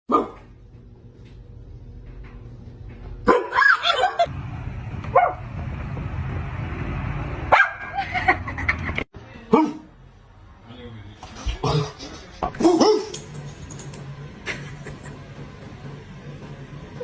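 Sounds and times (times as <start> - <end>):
dog barking and yelping: 3.3 - 4.3.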